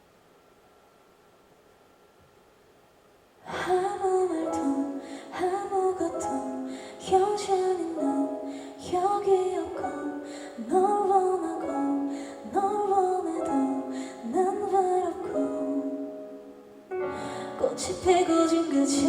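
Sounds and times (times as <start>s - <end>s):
woman singing: 3.4s - 16.3s, 17.2s - 19.0s
live ballad through speakers: 3.4s - 19.0s.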